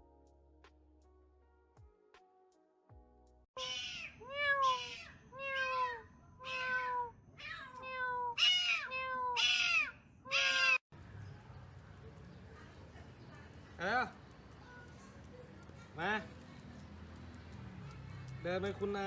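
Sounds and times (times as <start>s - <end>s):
cat meowing: 3.6s - 10.8s.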